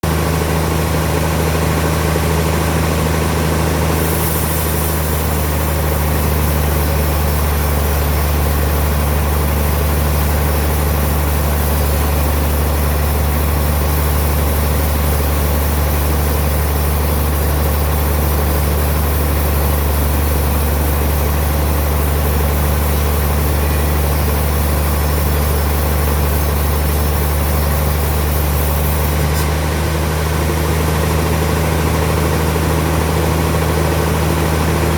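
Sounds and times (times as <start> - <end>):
deep machine hum: 0.0 - 34.9
sawmill sawing a log: 2.9 - 34.9
saw hiss: 4.0 - 29.6.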